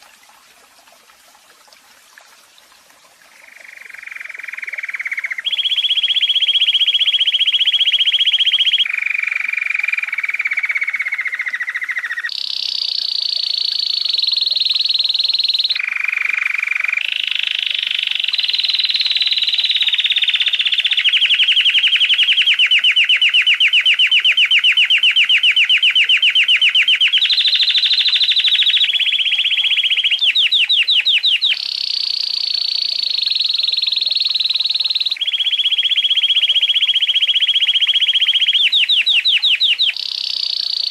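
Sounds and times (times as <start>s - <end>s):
canary singing trills: 3.5s - 12.4s, 18.6s - 31.6s, 33.4s - 40.9s.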